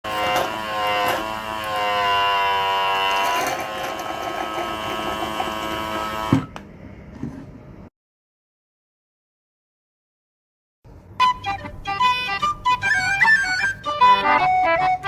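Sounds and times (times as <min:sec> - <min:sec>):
small electric motor whining: 0:00.0 - 0:06.5.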